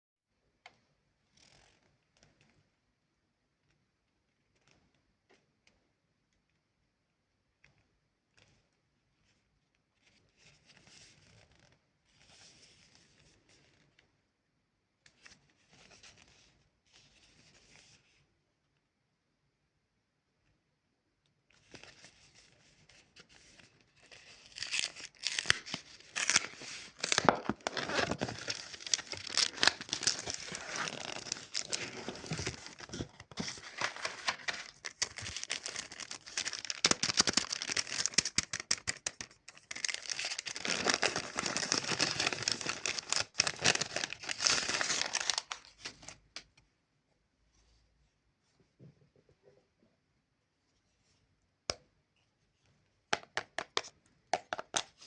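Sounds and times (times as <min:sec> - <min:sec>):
wrapper crinkling and tearing: 0:24.1 - 0:46.2.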